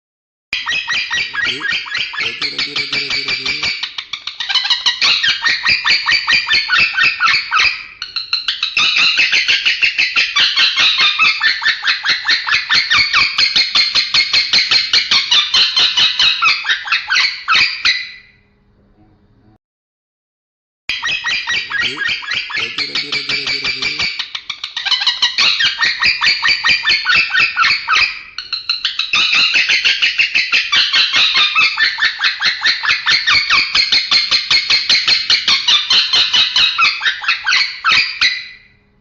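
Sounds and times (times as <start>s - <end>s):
lovebird chattering: 0.6s - 13.0s, 20.9s - 38.1s.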